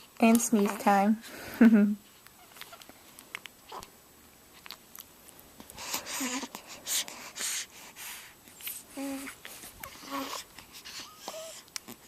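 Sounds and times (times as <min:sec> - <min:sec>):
baby snuffling and wheezing: 0:05.8 - 0:12.0.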